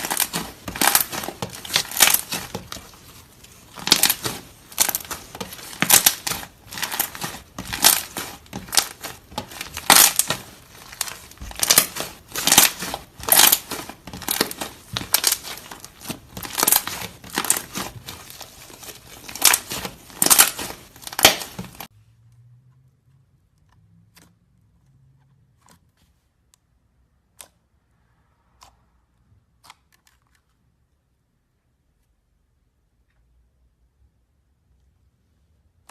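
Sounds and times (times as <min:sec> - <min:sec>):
slime popping and crackling: 0:00.0 - 0:21.9.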